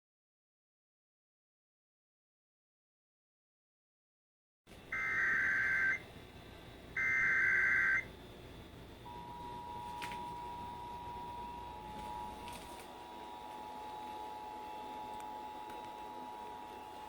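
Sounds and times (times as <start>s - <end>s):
two-tone attention signal: 5.0s - 6.0s, 7.0s - 8.1s.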